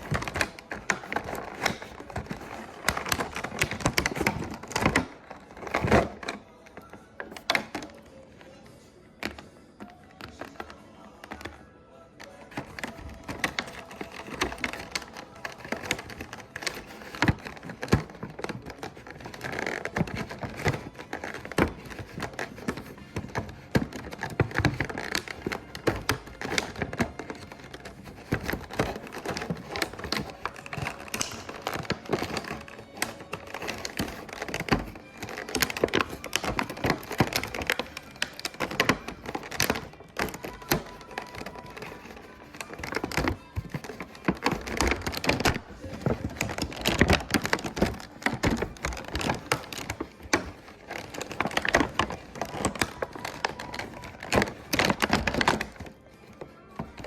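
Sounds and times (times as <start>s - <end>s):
packaging crinkling: 0.0s - 8.0s, 12.2s - 57.0s
plastic toy pieces clicking: 12.5s - 57.0s.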